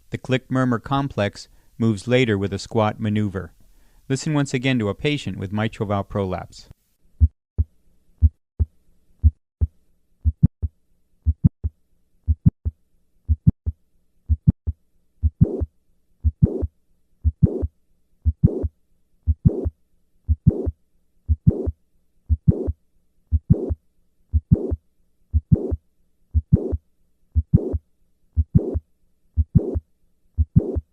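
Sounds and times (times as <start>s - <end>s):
heartbeat lub-dub: 7.2s - 11.6s, 12.3s - 18.7s, 19.3s - 19.7s, 20.3s - 26.8s, 27.4s - 27.8s, 28.4s - 28.8s, 29.4s - 29.8s, 30.4s - 30.9s
heart click and murmur: 9.2s - 10.6s, 11.3s - 11.6s, 12.3s - 12.6s, 13.3s - 18.7s, 19.3s - 19.7s, 20.3s - 20.7s, 21.3s - 21.7s, 22.3s - 24.8s, 25.4s - 25.8s, 26.4s - 26.8s, 27.4s - 27.8s, 28.4s - 28.8s, 29.4s - 29.8s, 30.4s - 30.9s.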